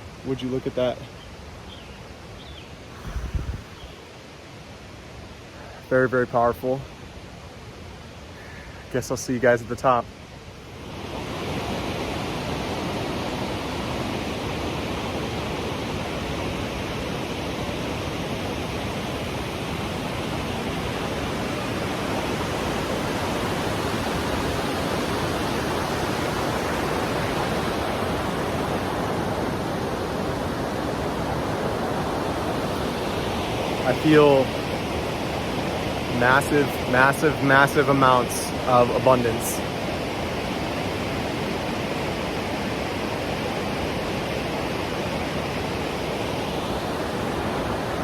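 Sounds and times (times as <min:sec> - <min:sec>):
waterfall rushing: 0:20.1 - 0:48.0.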